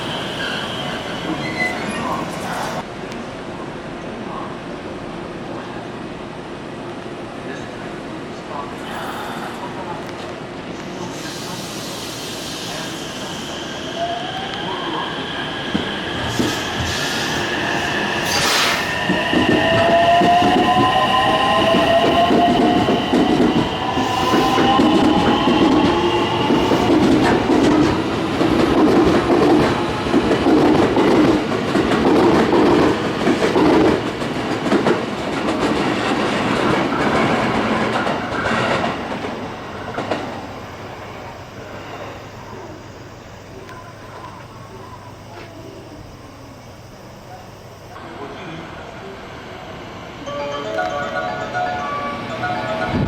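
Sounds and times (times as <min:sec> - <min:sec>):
electric train motors whining: 0:12.0 - 0:35.0, 0:37.3 - 0:48.0.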